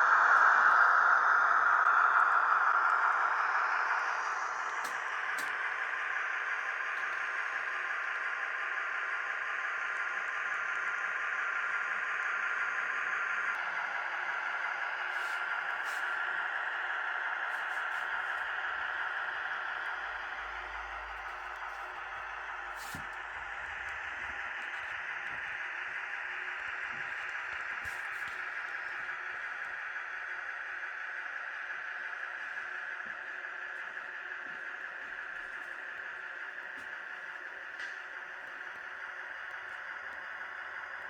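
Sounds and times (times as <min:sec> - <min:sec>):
model train rolling hiss: 0:13.7 - 0:41.0.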